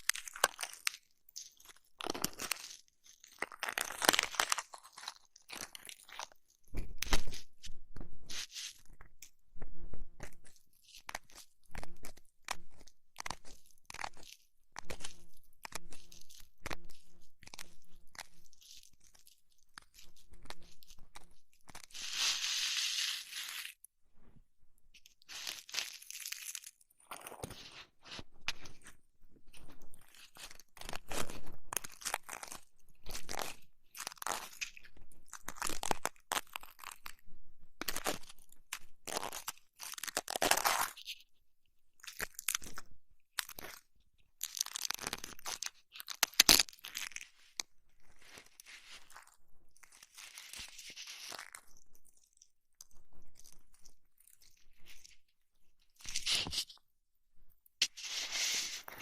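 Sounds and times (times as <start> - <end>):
crunchy rubbing and scratching: 0.0 - 24.3, 25.0 - 37.2, 44.4 - 55.3, 55.9 - 56.8, 57.8 - 59.0
hissing rub: 57.8 - 59.0.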